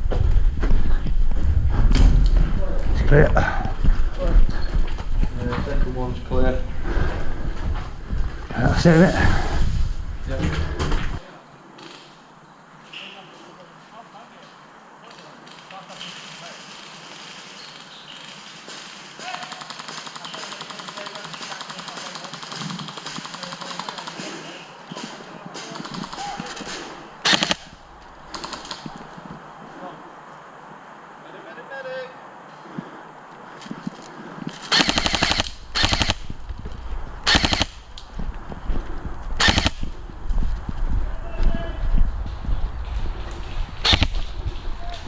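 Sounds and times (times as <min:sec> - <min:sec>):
airsoft rifle rapid fire: 0:18.8 - 0:24.4, 0:25.7 - 0:27.7, 0:34.7 - 0:36.3, 0:37.2 - 0:37.8, 0:39.4 - 0:39.9, 0:43.8 - 0:44.3.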